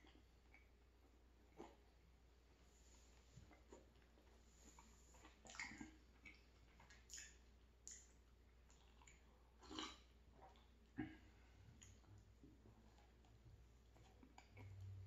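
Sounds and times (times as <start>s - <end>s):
person chewing: 3.5s - 15.0s.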